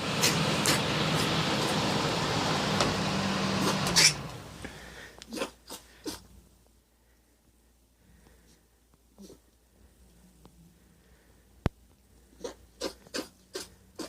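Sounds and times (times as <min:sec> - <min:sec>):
small pet sneezing: 0:03.6 - 0:04.3, 0:05.3 - 0:06.3, 0:12.4 - 0:14.0.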